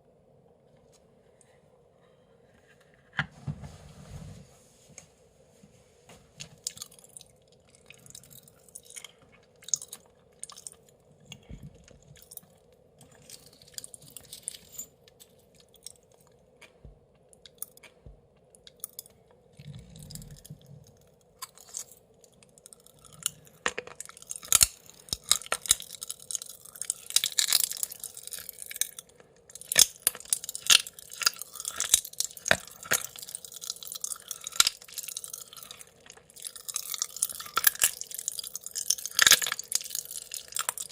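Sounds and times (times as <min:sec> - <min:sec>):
wet mouth clicks and chewing: 0:06.5 - 0:14.4, 0:15.2 - 0:40.9
popping candy crackling: 0:20.1 - 0:40.9.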